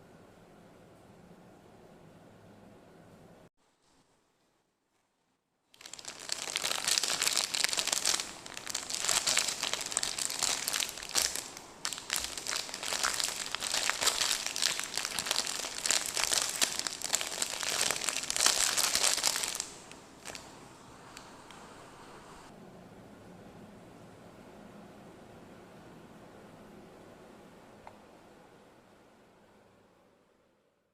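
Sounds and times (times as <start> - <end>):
candy wrapper crackling and tearing: 5.8 - 20.5.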